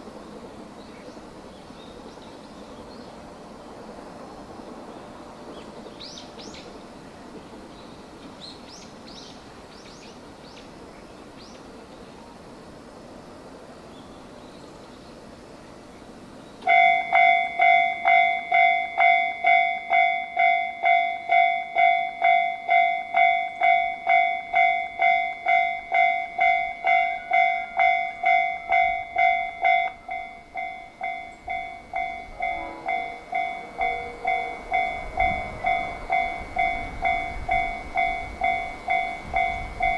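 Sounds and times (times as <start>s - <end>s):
electronic crossing warning bell: 16.6s - 39.9s.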